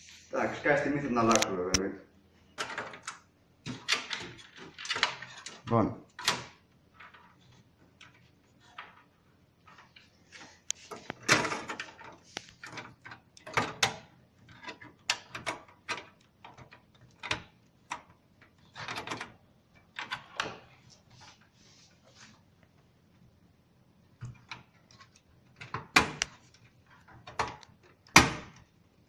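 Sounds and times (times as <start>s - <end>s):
computer parts clicking and knocking: 2.6s - 20.8s, 24.1s - 28.7s.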